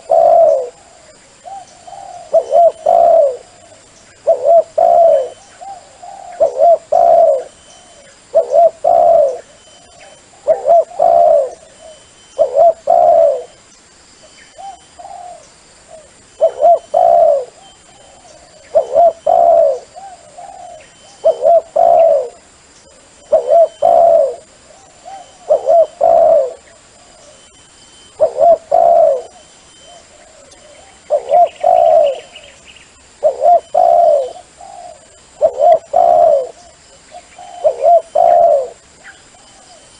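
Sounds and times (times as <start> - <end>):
dove cooing: 0.0 - 13.6, 14.5 - 39.9
small birds chirping: 0.0 - 39.9.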